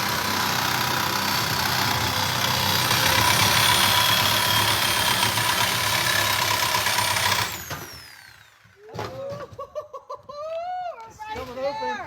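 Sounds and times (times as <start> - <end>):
power cutting tool cutting steel: 0.0 - 8.7.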